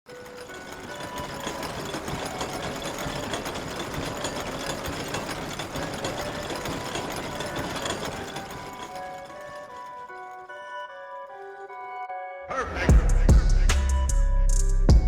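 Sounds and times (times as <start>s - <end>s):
hollow bells clattering: 0.1s - 11.0s.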